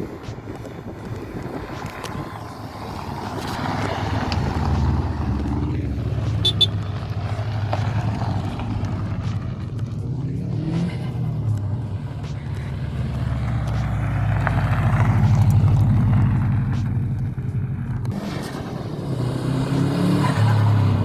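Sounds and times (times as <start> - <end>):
car engine approaching: 0.0 - 21.0
high double chirp: 6.4 - 7.0.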